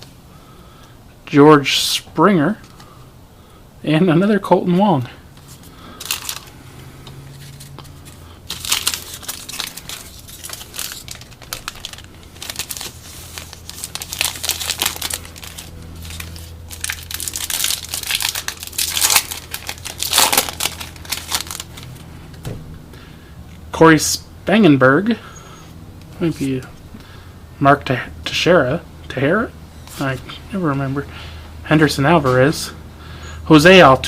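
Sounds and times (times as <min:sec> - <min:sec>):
plastic foil wrapper crinkling: 0:06.0 - 0:06.6, 0:07.3 - 0:22.0.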